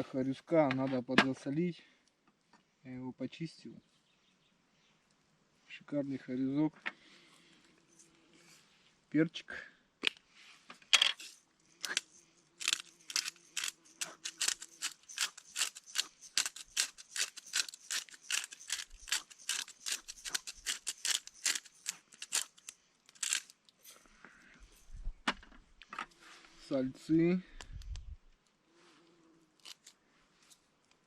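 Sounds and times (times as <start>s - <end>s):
pepper grinder crunching clicks: 11.8s - 23.6s.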